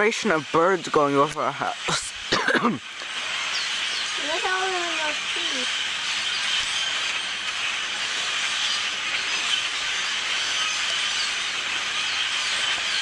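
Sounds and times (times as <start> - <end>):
flock of birds chirping: 0.0 - 13.0.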